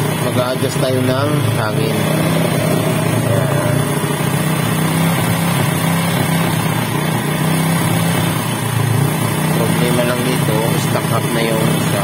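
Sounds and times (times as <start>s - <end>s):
motorcycle engine idling: 0.0s - 12.0s.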